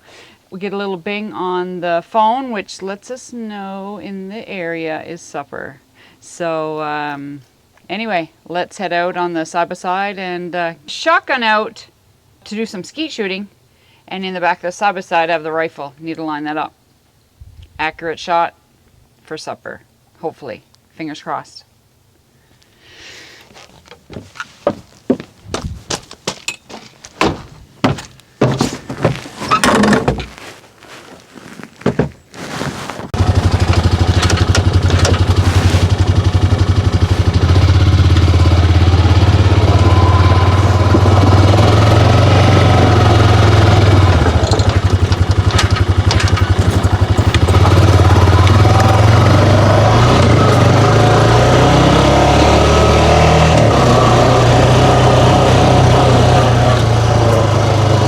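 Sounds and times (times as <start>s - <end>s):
knocks and clatter: 26.3s - 30.4s, 31.8s - 32.2s, 33.2s - 50.9s
vehicle engine running: 33.2s - 58.0s.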